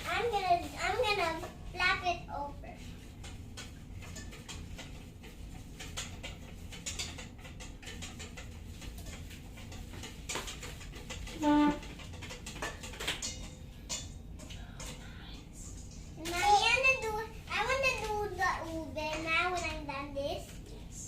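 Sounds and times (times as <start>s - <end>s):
spatula scraping frying pan: 0.0s - 15.0s
low steady hum: 0.0s - 21.0s.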